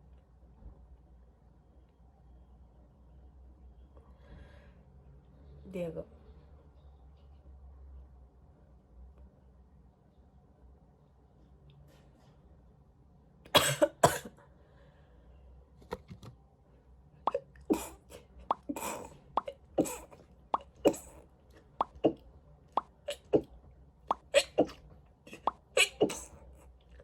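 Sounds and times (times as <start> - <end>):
person coughing: 13.6 - 14.3, 17.7 - 18.0, 19.8 - 20.2, 20.8 - 21.2, 23.1 - 23.5, 24.1 - 26.3
person sneezing: 17.3 - 18.0, 18.6 - 21.2, 21.8 - 22.2, 23.1 - 23.5, 24.1 - 26.4.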